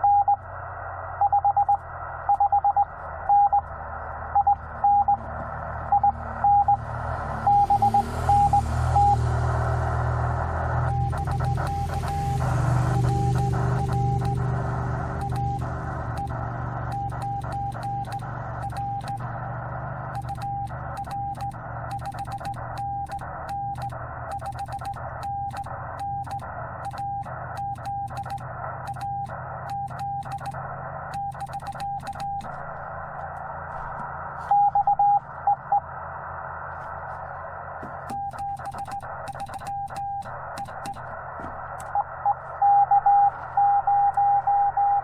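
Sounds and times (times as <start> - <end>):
morse code tone: 1.2 - 3.7, 5.9 - 9.2, 10.7 - 19.3, 20.1 - 30.6, 41.9 - 45.0
radio band hiss: 1.8 - 24.3, 35.2 - 42.6.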